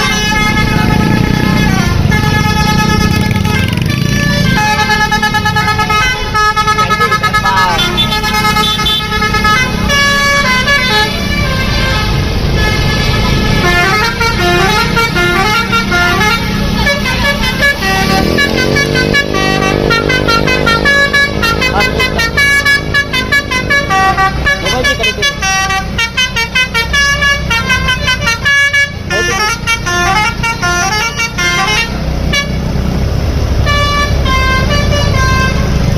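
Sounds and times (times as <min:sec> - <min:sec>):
deep horn sliding up in pitch: 0:00.0 - 0:24.7
bus engines rumbling: 0:00.0 - 0:35.9
melodic bus horns: 0:00.0 - 0:35.9.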